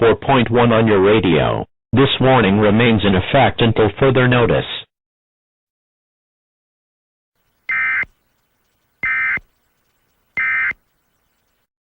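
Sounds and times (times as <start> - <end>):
modem-like data tones: 7.4 - 11.7.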